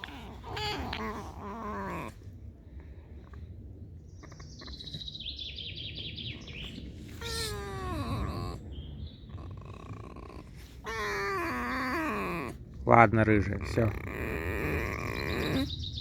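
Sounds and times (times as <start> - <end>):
fox squeaking and whining: 0.0 - 2.3, 6.4 - 12.8, 13.5 - 16.0.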